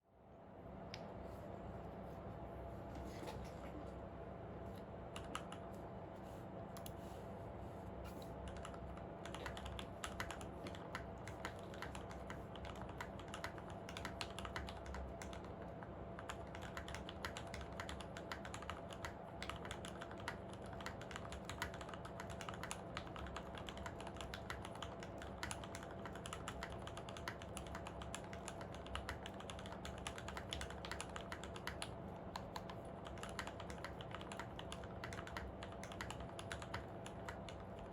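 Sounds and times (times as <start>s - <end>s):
faint steady hum: 0.0s - 37.9s
mechanical keyboard typing: 5.1s - 5.6s, 8.5s - 37.9s.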